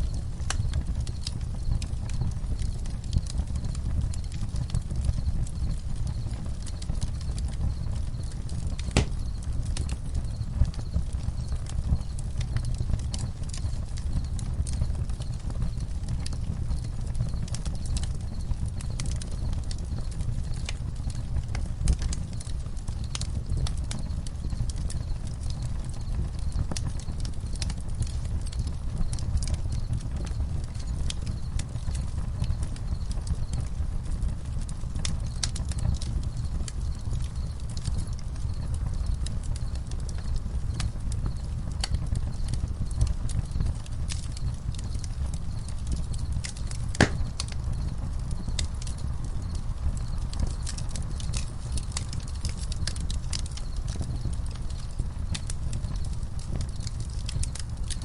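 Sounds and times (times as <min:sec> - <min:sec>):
campfire crackling: 0:00.0 - 0:58.0.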